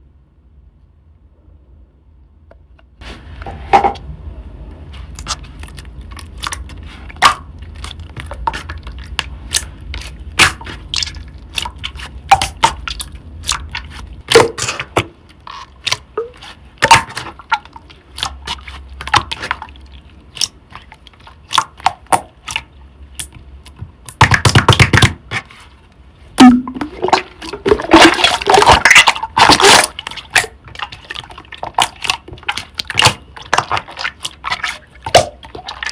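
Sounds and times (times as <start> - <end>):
slime crackling: 26.4 - 35.9.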